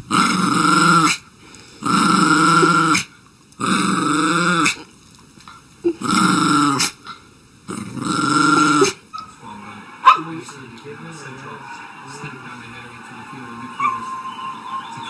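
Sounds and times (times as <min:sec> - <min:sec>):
dog growling: 0:00.0 - 0:01.2, 0:01.8 - 0:04.9, 0:05.8 - 0:07.0, 0:07.7 - 0:09.0.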